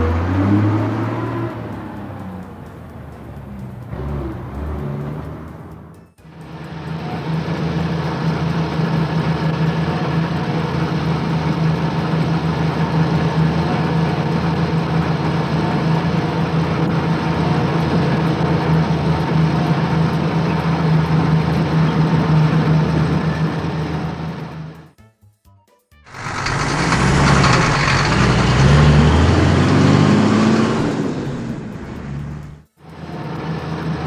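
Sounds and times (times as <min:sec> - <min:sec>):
heavy vehicle engine idling: 0:01.6 - 0:24.4, 0:26.1 - 0:33.4.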